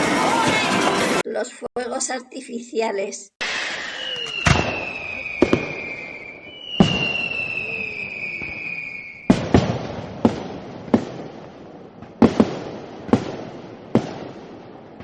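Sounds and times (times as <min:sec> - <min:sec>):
whistling firework rocket: 0:03.4 - 0:10.9
firework bangs: 0:03.4 - 0:15.0
firework crackle: 0:03.4 - 0:15.0.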